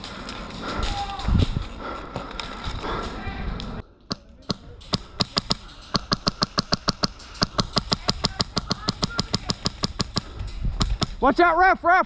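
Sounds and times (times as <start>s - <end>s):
airsoft gun rapid firing: 4.5s - 11.1s.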